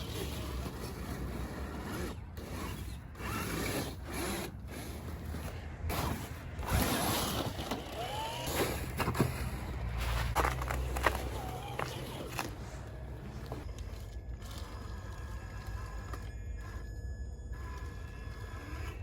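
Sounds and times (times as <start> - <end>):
electric motor whirring: 6.6 - 8.8, 13.4 - 19.0.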